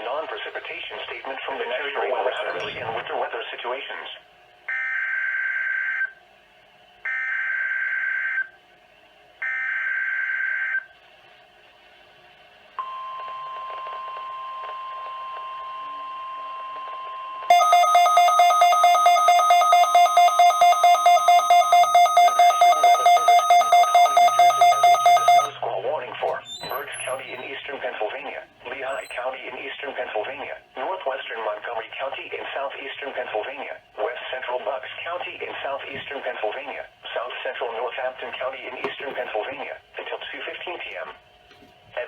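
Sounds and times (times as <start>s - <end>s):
electronic alarm beeping rapidly: 17.5s - 25.6s
steady warning tone: 17.5s - 25.6s.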